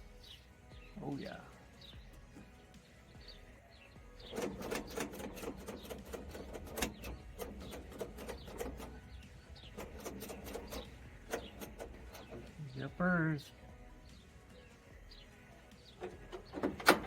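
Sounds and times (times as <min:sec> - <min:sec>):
mechanical clicking and rattling: 0:04.2 - 0:12.6, 0:16.0 - 0:17.0.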